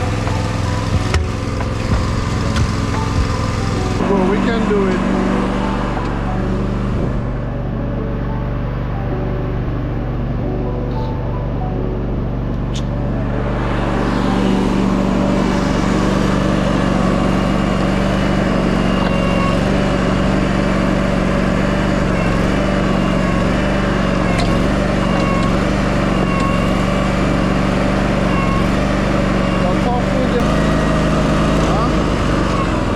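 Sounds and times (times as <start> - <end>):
engine running: 0.0 - 32.9
faint wavering whine: 2.1 - 18.0.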